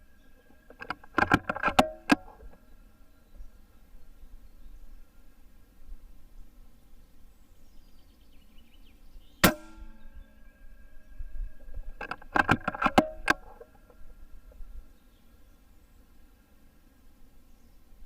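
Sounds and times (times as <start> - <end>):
sharp clicks: 0.6 - 2.6, 12.0 - 14.0
air rifle shot with metallic ring: 9.4 - 10.3.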